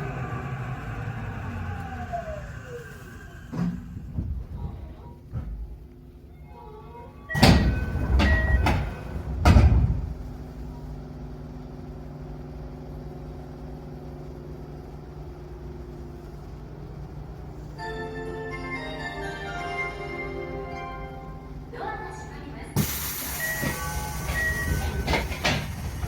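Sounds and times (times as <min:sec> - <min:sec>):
train doors closing: 0:00.0 - 0:11.2, 0:17.8 - 0:26.0
stationary train humming: 0:00.0 - 0:26.0
heavy door thud: 0:07.4 - 0:10.2
brief tones: 0:23.2 - 0:25.1.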